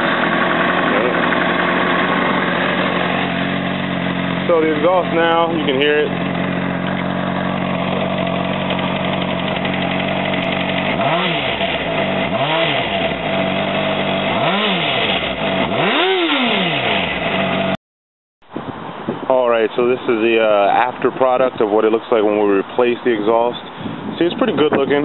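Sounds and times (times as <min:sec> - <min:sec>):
motorcycle engine idling and revving: 0:00.0 - 0:17.8.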